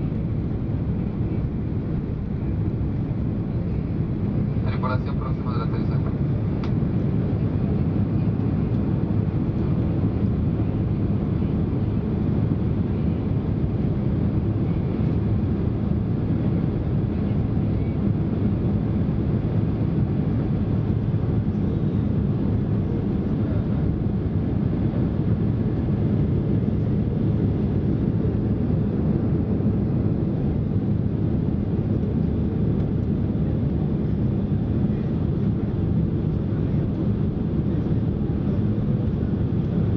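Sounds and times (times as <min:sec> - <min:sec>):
airliner engines and airflow rush: 0:00.0 - 0:39.9.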